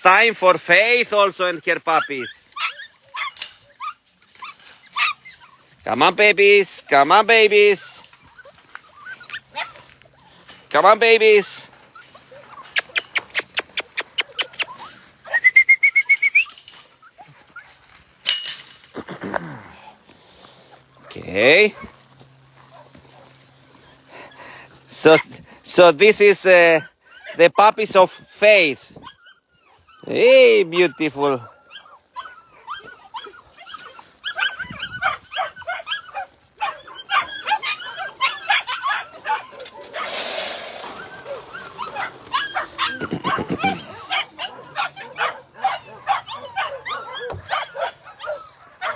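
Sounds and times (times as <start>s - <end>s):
puppies whimpering and yipping: 1.7s - 5.8s, 7.5s - 10.6s, 11.2s - 18.0s, 20.6s - 28.0s, 29.0s - 48.9s
person whistling short notes: 15.3s - 16.5s.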